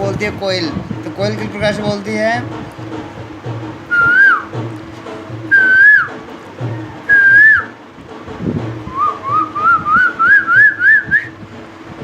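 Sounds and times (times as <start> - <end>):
man whistling bird call: 3.9 - 4.5, 5.5 - 7.8, 8.9 - 11.4.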